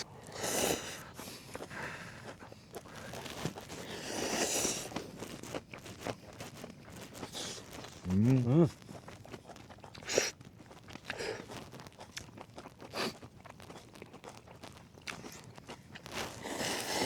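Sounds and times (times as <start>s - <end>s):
noodles being slurped: 0.0s - 17.0s
crunching chewing clicks: 1.0s - 17.0s.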